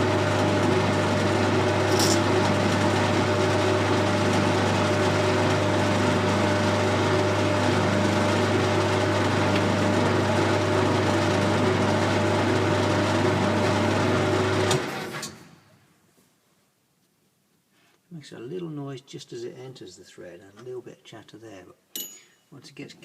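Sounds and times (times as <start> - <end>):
lathe running with gear whine: 0.0 - 14.8.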